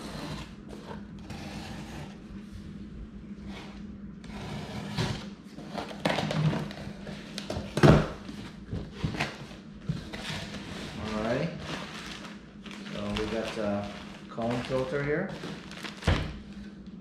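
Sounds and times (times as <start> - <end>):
cardboard packaging rustling: 5.6 - 17.0.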